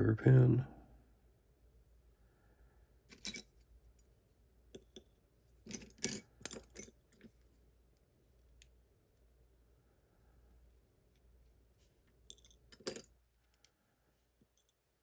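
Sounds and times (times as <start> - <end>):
small metallic clicks and clinks: 3.1 - 4.1, 4.7 - 7.4, 12.1 - 13.7, 14.4 - 14.9.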